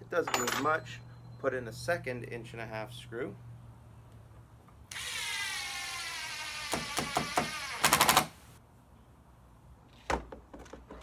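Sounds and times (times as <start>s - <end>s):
impact driver driving screw: 4.9s - 8.4s.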